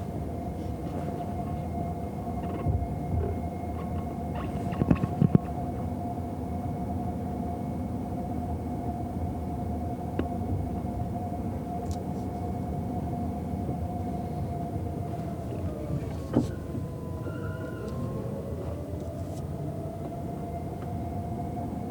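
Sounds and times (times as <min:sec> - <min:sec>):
constant cabin hum: 0:00.0 - 0:21.9
road and tyre rumble: 0:14.9 - 0:21.9.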